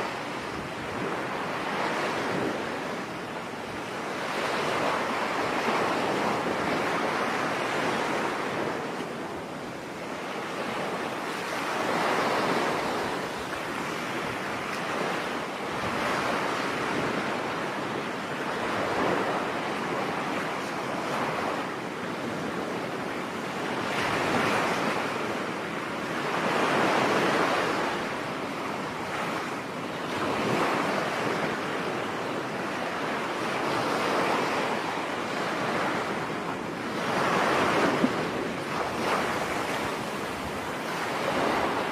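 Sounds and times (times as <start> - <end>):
ocean waves breaking on beach: 0.0 - 41.9.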